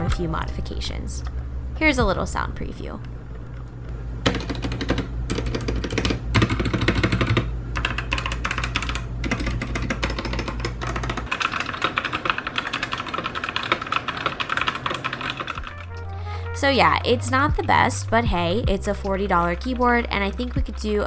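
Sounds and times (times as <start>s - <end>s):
fast mechanical keyboard typing: 4.2s - 15.8s.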